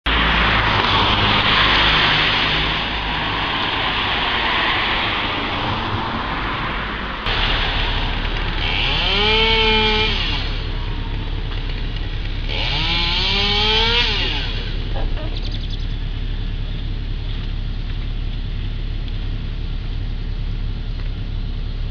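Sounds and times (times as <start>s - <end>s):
low engine hum: 0.1s - 21.9s
chainsaw revving: 7.3s - 15.0s
chainsaw running: 7.3s - 15.0s.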